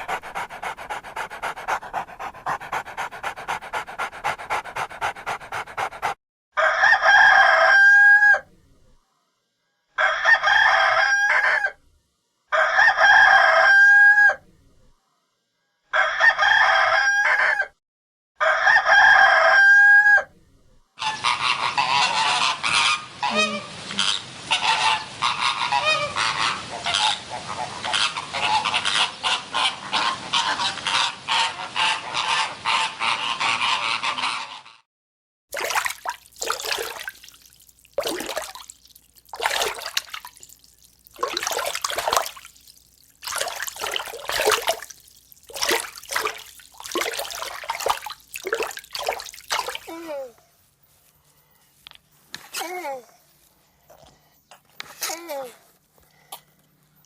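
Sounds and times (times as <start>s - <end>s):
rapid panting breaths: 0.0s - 6.2s, 36.2s - 49.9s.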